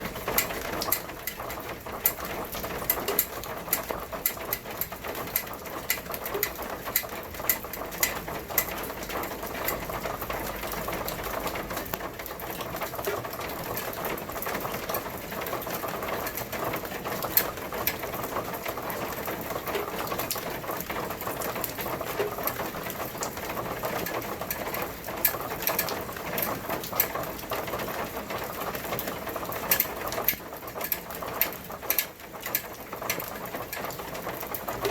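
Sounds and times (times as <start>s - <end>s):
rain pattering: 0.0s - 34.9s.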